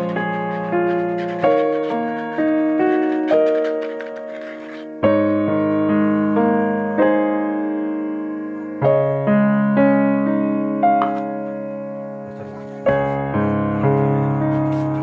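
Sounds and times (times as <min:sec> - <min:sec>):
electric piano chords: 0:04.8 - 0:15.0.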